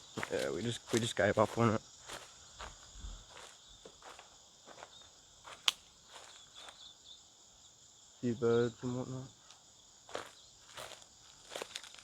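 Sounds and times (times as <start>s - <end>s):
footsteps crunching on leaves: 0.0s - 6.8s, 10.1s - 12.0s
insects buzzing: 0.0s - 12.0s.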